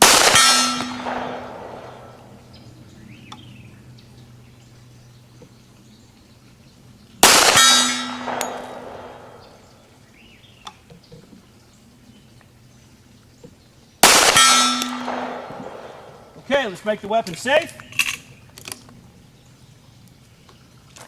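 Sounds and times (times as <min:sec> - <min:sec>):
pistol shots: 0:00.0 - 0:02.3, 0:07.2 - 0:09.6, 0:14.0 - 0:16.3.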